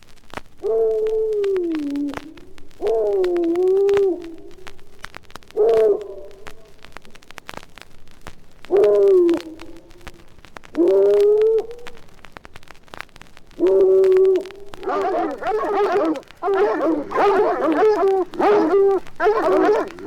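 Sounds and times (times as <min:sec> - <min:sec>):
large dog baying: 0:05.6 - 0:06.8, 0:10.8 - 0:11.9, 0:13.6 - 0:20.0.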